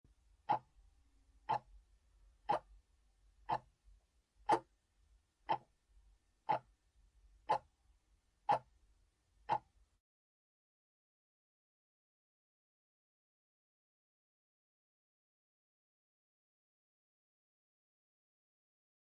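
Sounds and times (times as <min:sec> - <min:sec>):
timer ticking: 0:00.5 - 0:00.7, 0:01.5 - 0:01.7, 0:02.5 - 0:02.7, 0:03.5 - 0:03.7, 0:05.5 - 0:05.7, 0:06.5 - 0:06.7, 0:07.5 - 0:07.7, 0:08.5 - 0:08.7, 0:09.5 - 0:09.7.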